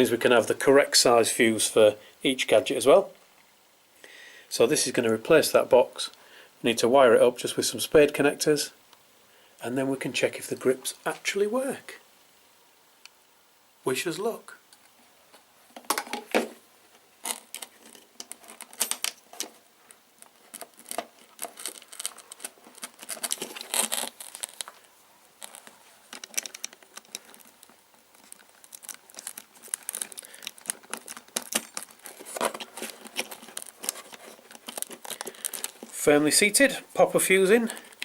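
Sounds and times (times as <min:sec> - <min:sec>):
wiring clicks and scrapes: 0:17.2 - 0:36.7.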